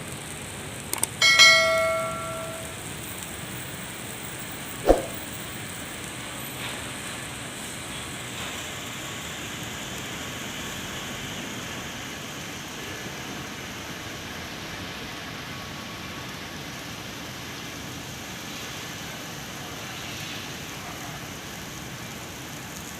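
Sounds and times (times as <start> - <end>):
metallic clang: 1.3 - 2.8.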